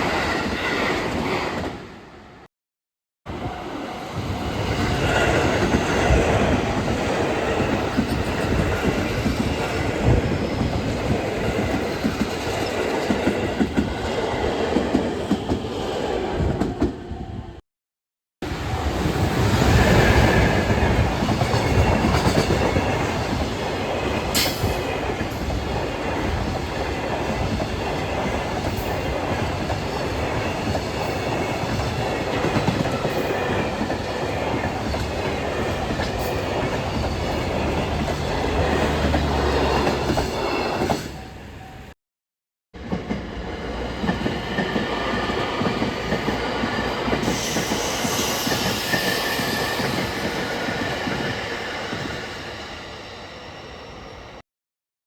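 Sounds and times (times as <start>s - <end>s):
train wheels clattering on rails: 4.8s - 14.0s, 20.5s - 41.2s, 43.9s - 52.2s
high wheel squeal: 47.2s - 54.1s.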